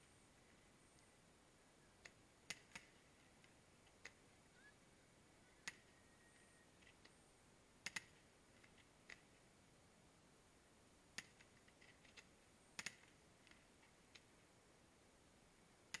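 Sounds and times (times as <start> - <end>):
faint sharp clicks: 0.9 - 1.1, 2.0 - 4.3, 5.6 - 6.0, 7.8 - 9.4, 11.1 - 14.3.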